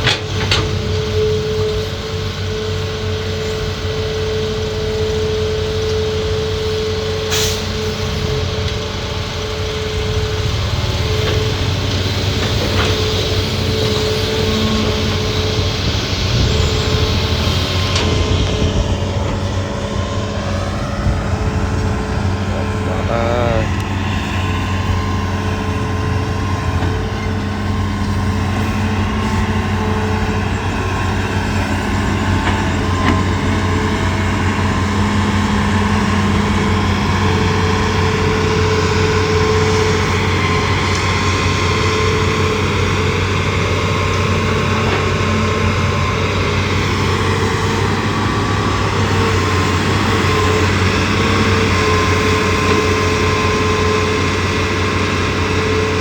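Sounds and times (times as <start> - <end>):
excavator diesel engine running: 0.0 - 56.0.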